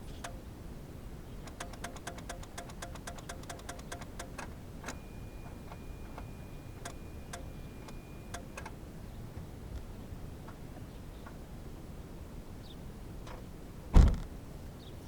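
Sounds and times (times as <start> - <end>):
starter solenoid clicking: 1.4 - 8.8
steady high beep: 4.9 - 8.6.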